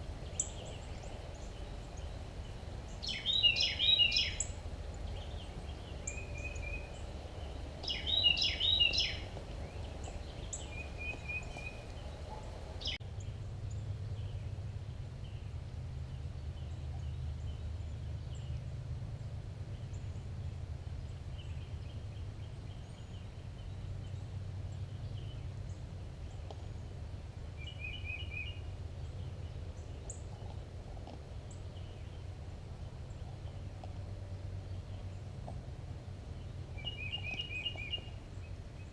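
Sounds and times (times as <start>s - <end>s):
rapid rattling bird calls: 0.0s - 14.2s
bird chirping trills: 0.0s - 18.8s, 27.6s - 30.6s, 36.3s - 38.9s
low steady rumble: 0.0s - 38.9s.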